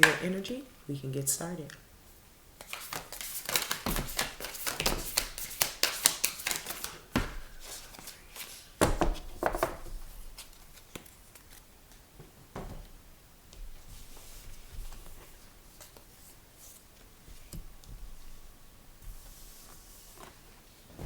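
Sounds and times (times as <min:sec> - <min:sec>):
cards being shuffled: 0:02.6 - 0:12.0
cards slapping: 0:02.6 - 0:12.0.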